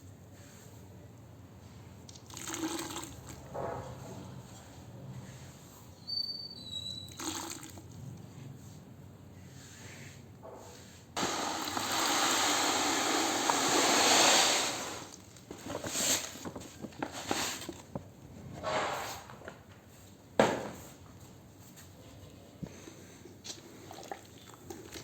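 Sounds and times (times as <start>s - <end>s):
sand crumbling in water hiss: 11.2s - 15.2s.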